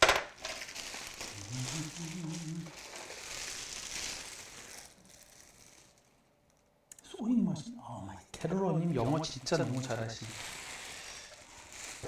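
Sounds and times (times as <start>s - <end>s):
plastic packaging crinkling: 0.0s - 6.7s, 8.4s - 12.0s.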